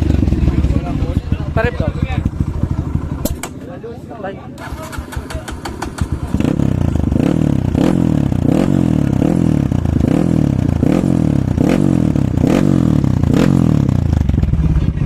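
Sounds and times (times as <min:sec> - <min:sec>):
dirt bike engine revving: 0:04.6 - 0:14.8
sharp exhaust crack: 0:04.6 - 0:14.8.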